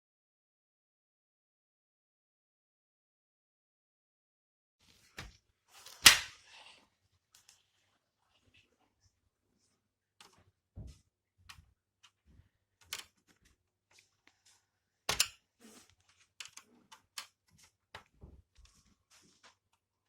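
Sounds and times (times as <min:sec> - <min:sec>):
clicks and knocks of tools: 0:12.8 - 0:14.1, 0:15.1 - 0:15.4, 0:16.1 - 0:18.1.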